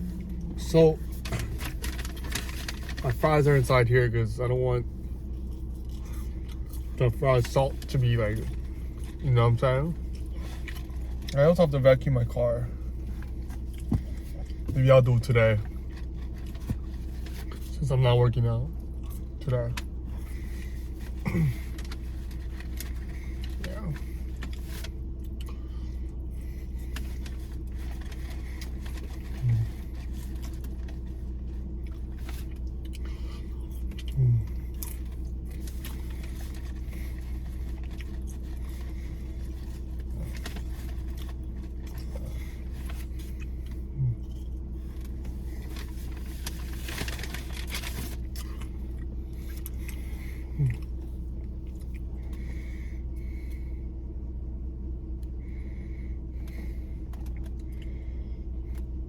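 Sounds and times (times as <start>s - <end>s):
car cabin engine hum: 0.0s - 59.0s.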